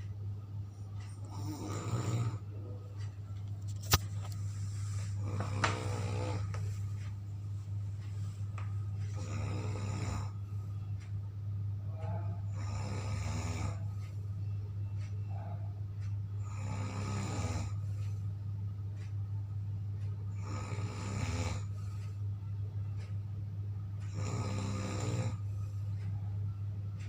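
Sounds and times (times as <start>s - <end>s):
steady low hum: 0.0s - 27.0s
person snoring loudly: 1.3s - 2.4s, 5.2s - 6.5s, 9.1s - 10.4s, 12.5s - 13.8s, 16.4s - 17.8s, 20.3s - 21.7s, 24.1s - 25.4s.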